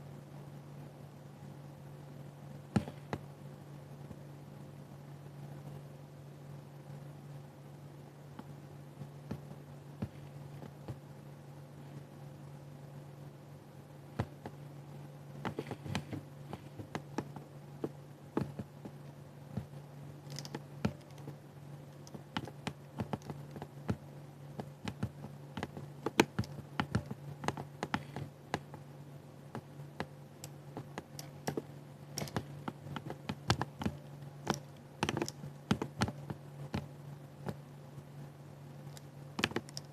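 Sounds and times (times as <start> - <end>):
steady low hum: 0.0 - 39.9
keyboard keystroke clicks: 20.3 - 21.4, 24.6 - 28.8, 29.6 - 37.6, 38.9 - 39.9.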